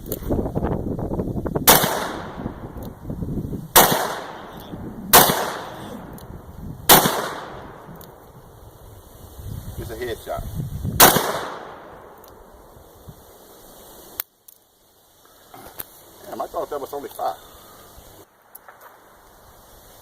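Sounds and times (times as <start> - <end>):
gunshots with echo: 1.7 - 2.4, 3.8 - 6.1, 6.9 - 7.8, 11.0 - 11.9.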